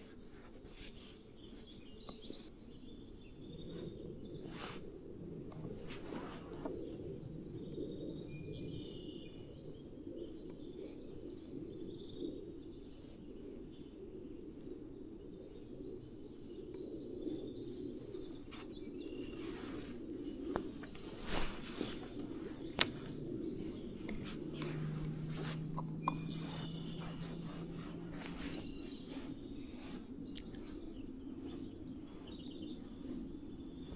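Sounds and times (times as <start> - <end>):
birds chirping: 0.0 - 33.9
low rushing background: 11.8 - 33.9.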